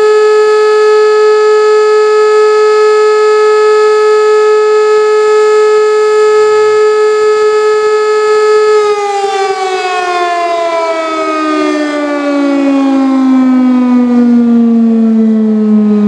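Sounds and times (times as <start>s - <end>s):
siren steady tone: 0.0s - 16.0s.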